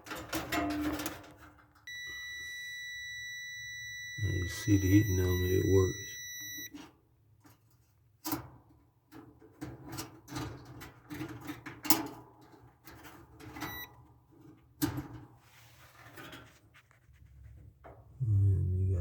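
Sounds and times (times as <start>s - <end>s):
multimeter continuity beep: 1.9s - 6.8s, 13.6s - 13.9s.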